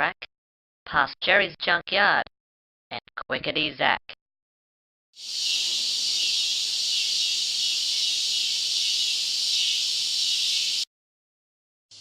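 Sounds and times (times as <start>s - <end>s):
crickets chirping: 5.2s - 10.8s.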